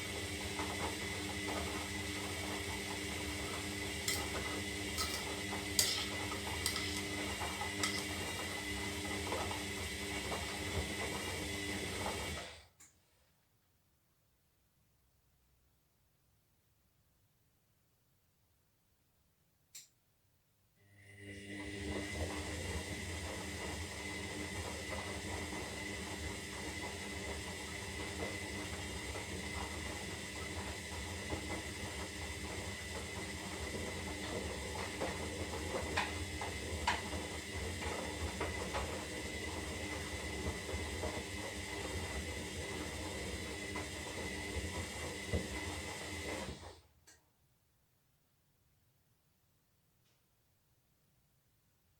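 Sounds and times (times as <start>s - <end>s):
washing machine hum: 0.0s - 12.8s, 20.9s - 47.0s.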